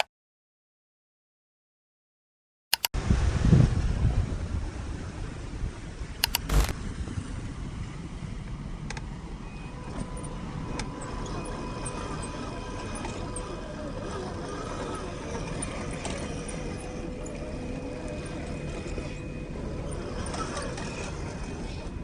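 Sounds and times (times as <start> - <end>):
small clicks: 6.2 - 6.8.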